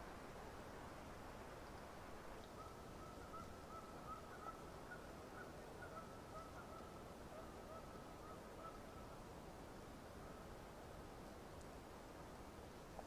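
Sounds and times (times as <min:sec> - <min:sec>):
background hiss: 0:00.0 - 0:13.0
distant bird calls: 0:02.5 - 0:09.1.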